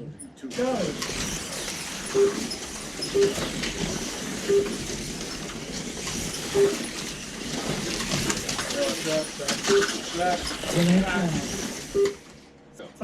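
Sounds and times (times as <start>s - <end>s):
model race cars rumbling hum: 0.8s - 11.9s
short electronic beeps: 2.0s - 3.5s, 4.4s - 4.8s, 11.9s - 12.2s.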